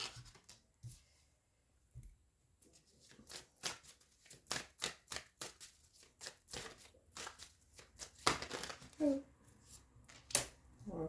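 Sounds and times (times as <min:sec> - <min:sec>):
cards being shuffled: 0:00.0 - 0:00.6, 0:03.0 - 0:10.7.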